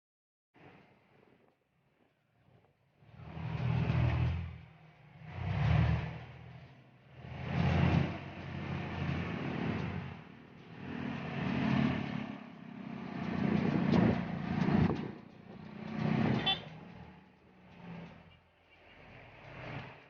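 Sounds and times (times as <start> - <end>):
cars and motorcycles passing: 2.1 - 20.0
car horn toot: 16.4 - 16.8.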